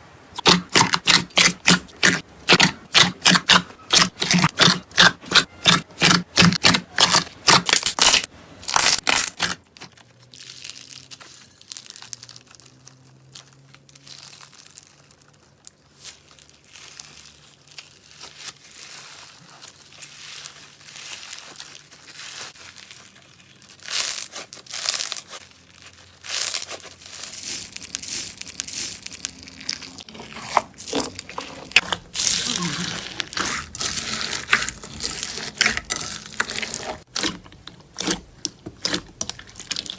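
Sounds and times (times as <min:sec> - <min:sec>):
slime squishing: 0:00.3 - 0:39.9
slime crackling and popping: 0:00.4 - 0:39.9.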